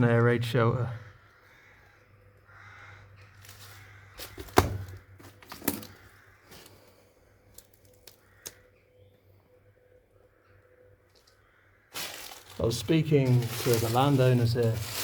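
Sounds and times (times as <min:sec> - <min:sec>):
sharp cracks and knocks: 0:03.4 - 0:06.7.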